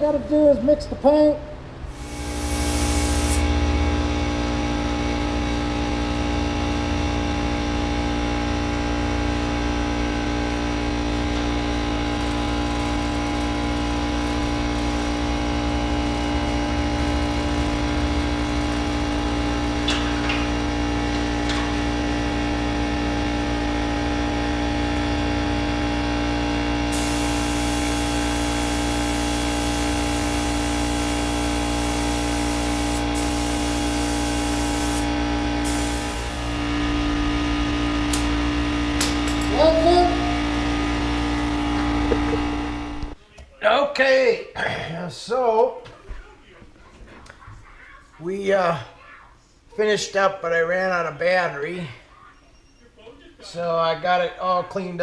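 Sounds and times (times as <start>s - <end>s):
air hissing: 1.9s - 3.6s, 26.9s - 36.6s
electric motor humming: 1.9s - 43.2s.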